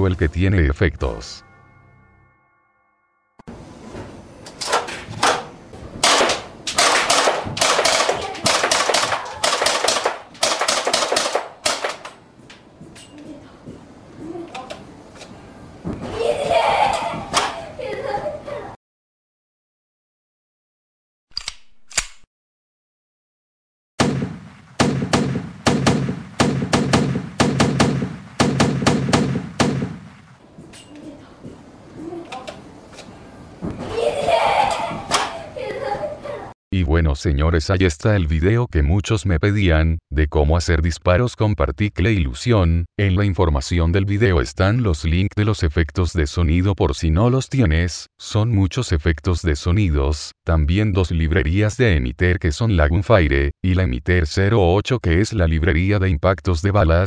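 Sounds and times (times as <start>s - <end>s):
pistol gunshots: 6.0s - 12.1s, 24.0s - 30.3s.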